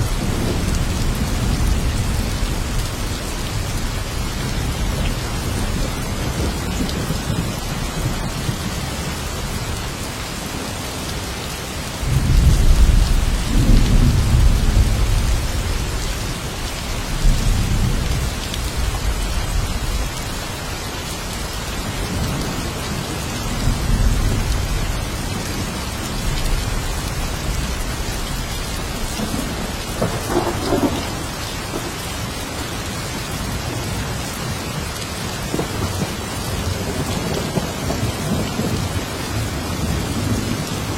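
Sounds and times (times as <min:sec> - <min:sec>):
heavy rain hissing: 0:00.0 - 0:40.9
thunder rumbling: 0:12.0 - 0:20.1, 0:21.8 - 0:32.3, 0:35.4 - 0:40.9.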